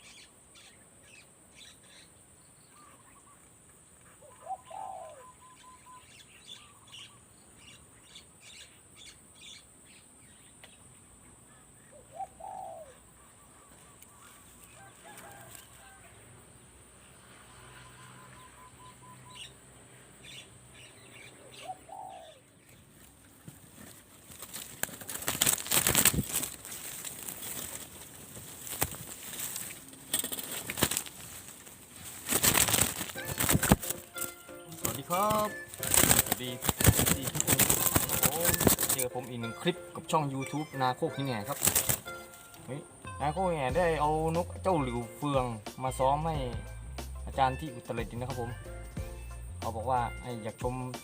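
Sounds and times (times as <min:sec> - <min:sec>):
small birds chirping: 0:00.0 - 0:16.0, 0:17.0 - 0:46.6
dove cooing: 0:04.1 - 0:06.8, 0:11.9 - 0:16.0, 0:21.2 - 0:22.5, 0:23.4 - 0:39.4, 0:40.1 - 0:43.0.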